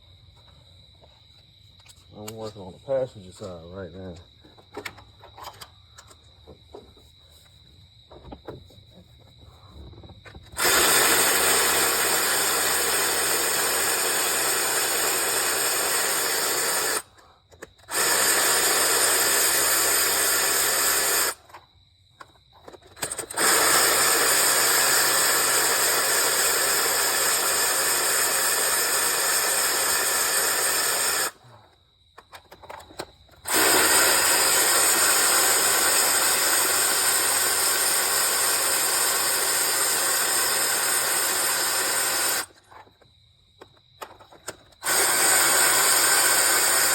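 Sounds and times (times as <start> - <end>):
compressed air hissing: 10.6 - 21.4, 23.3 - 31.6, 33.5 - 42.5, 44.8 - 46.9.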